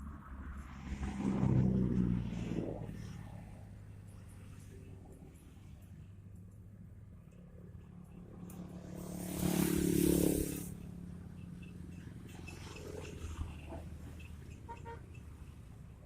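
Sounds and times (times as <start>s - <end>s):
vehicle passing close by: 0.0s - 4.8s, 8.2s - 14.5s.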